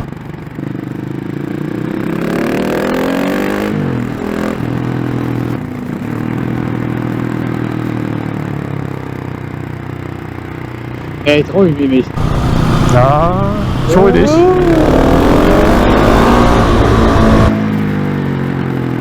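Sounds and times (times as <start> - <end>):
motorcycle engine revving: 0.0 - 5.7, 12.1 - 18.0.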